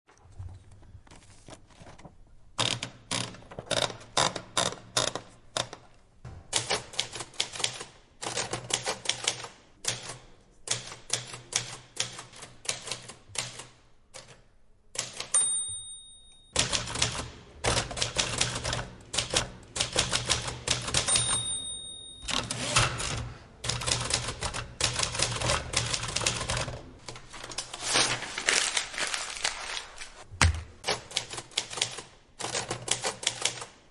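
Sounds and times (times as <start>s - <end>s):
typewriter carriage bell: 15.0s - 17.3s, 20.1s - 23.2s
typewriter keys clacking: 16.6s - 21.6s, 22.3s - 27.8s, 30.8s - 33.8s.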